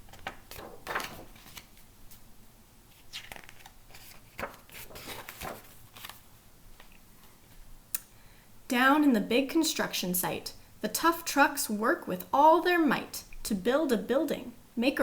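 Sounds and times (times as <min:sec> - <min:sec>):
book pages turning: 0:00.0 - 0:02.2, 0:02.9 - 0:07.0.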